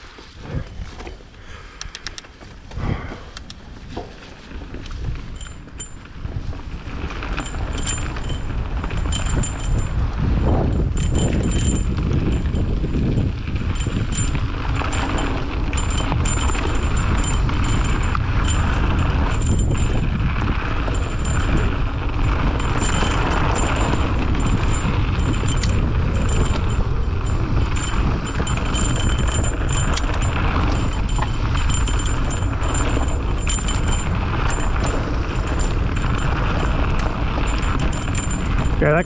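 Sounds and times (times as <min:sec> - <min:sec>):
mountain bike tyre and wind rush: 0:00.0 - 0:39.0
bike clicks and knocks: 0:00.1 - 0:39.0.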